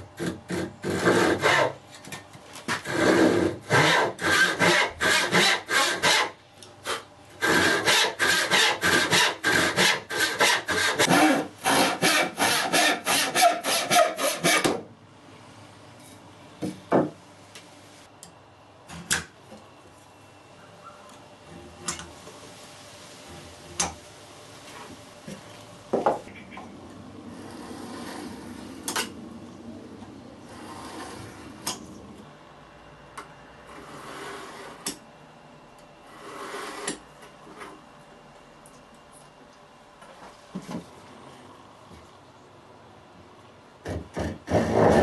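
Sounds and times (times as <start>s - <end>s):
rubbing or scraping on wood: 27.3s - 28.8s, 30.5s - 31.5s.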